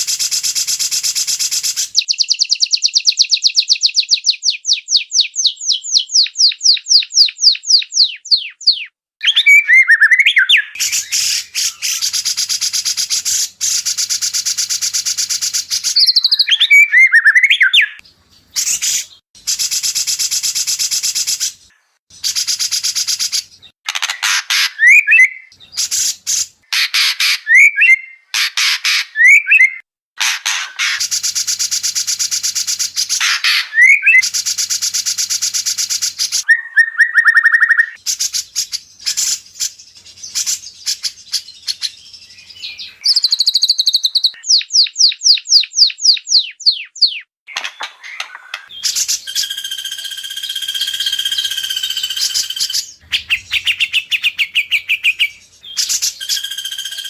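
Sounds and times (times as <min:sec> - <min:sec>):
bird whistled phrases: 0:00.2 - 0:18.0, 0:24.4 - 0:29.9, 0:33.0 - 0:34.4, 0:35.8 - 0:47.3, 0:48.0 - 0:57.0
bird harsh chattering: 0:01.6 - 0:18.0, 0:22.2 - 0:31.4, 0:32.9 - 0:39.5, 0:42.8 - 0:57.0.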